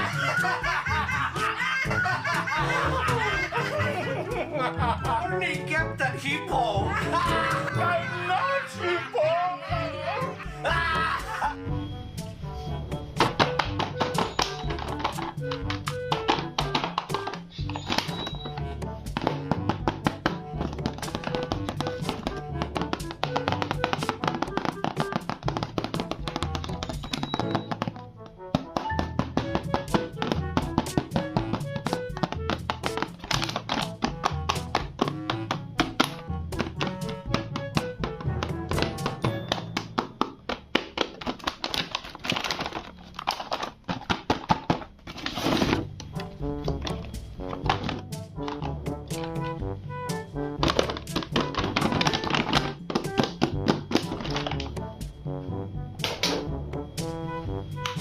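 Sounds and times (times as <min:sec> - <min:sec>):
music with clicking percussion: 0:00.0 - 0:05.8, 0:10.3 - 0:44.8, 0:45.4 - 0:58.0
plastic toys clicking and knocking: 0:35.8 - 0:45.8, 0:50.6 - 0:54.7
packaging crinkling: 0:40.8 - 0:45.9.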